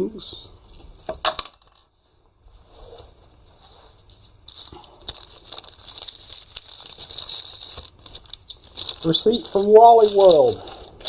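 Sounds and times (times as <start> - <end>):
paper rustling and crinkling: 2.7 - 11.0.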